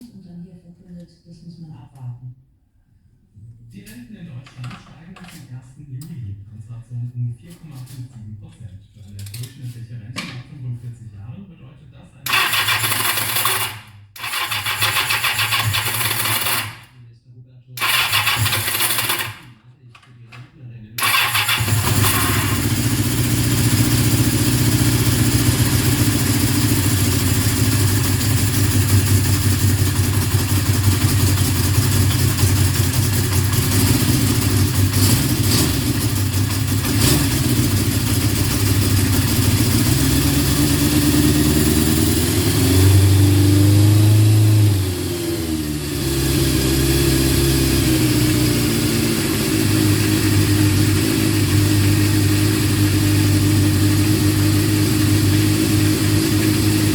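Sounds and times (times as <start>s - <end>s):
motorcycle engine running: 12.3s - 16.8s, 17.8s - 19.4s, 21.0s - 56.9s.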